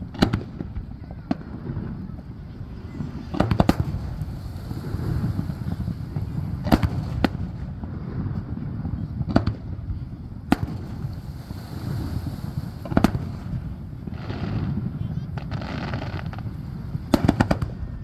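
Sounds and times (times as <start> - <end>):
fireworks bursting: 0.0 - 18.0
low rumble: 1.4 - 7.8.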